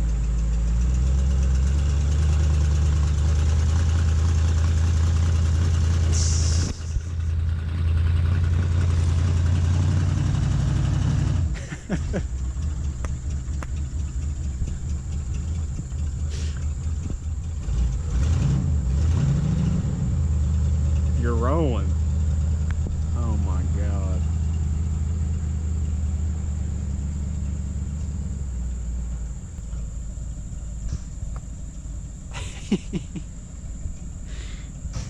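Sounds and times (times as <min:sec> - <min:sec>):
pickup truck engine running: 0:00.0 - 0:35.0
short high hiss: 0:06.1 - 0:07.1.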